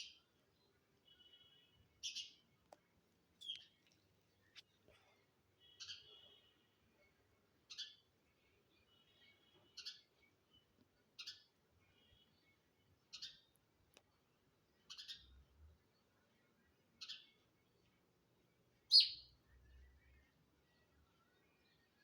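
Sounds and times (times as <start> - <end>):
sparrow chirping: 1.1 - 2.5, 7.6 - 8.2, 8.9 - 12.2, 13.0 - 13.6, 14.8 - 15.4, 17.0 - 17.5, 18.8 - 19.4.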